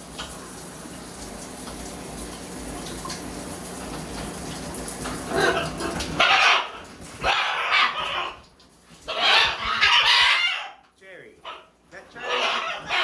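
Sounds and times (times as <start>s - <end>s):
shower water running: 0.0s - 13.0s
parrot calling loudly: 6.2s - 8.4s, 9.1s - 10.8s, 11.4s - 13.0s.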